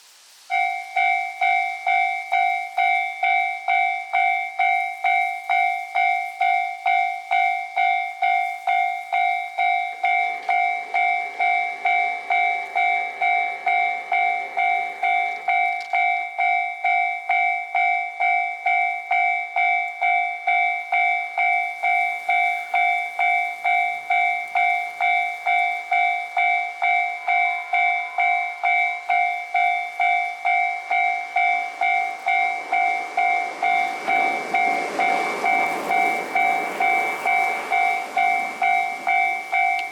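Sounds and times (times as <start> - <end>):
level crossing bell ringing: 0.5 - 39.9.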